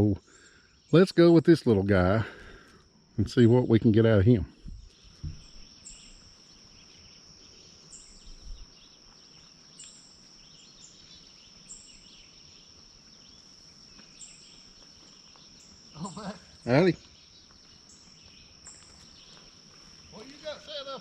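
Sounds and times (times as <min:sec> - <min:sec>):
birds chirping: 0:00.0 - 0:21.0
high-pitched insect drone: 0:05.0 - 0:21.0.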